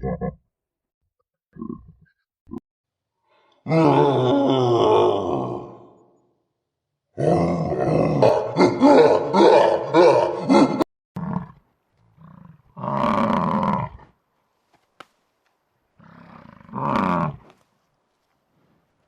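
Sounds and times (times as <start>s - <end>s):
roar-like animal call: 3.6s - 6.1s, 7.2s - 14.1s, 16.0s - 17.6s.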